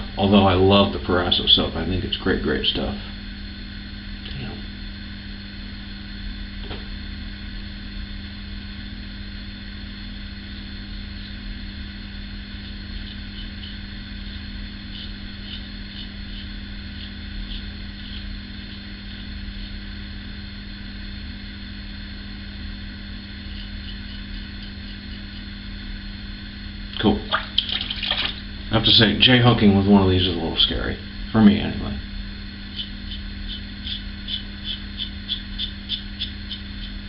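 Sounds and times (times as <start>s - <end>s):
low mechanical hum: 0.0s - 37.0s
razor scraping stubble: 12.6s - 19.9s, 23.4s - 25.6s, 32.7s - 37.0s.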